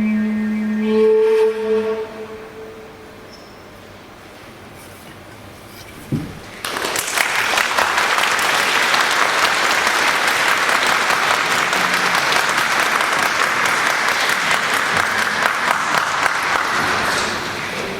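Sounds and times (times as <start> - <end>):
low thump: 6.1 - 6.5
audience applauding: 6.5 - 17.9.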